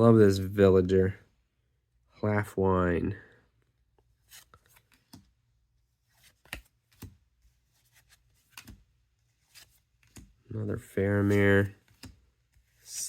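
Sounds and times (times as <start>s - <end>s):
cards sliding in hand: 6.0s - 10.4s.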